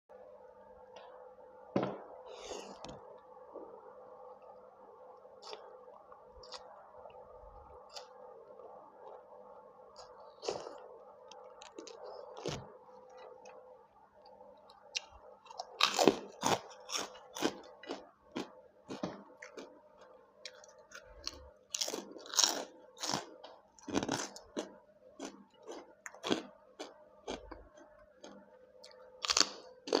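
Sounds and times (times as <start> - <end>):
faint steady hum: 0.0 - 30.0
chewing and crunching: 9.9 - 13.6, 14.9 - 30.0.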